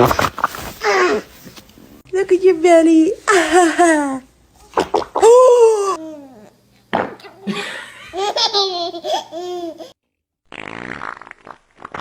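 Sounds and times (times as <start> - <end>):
baby laughing: 7.3 - 10.0.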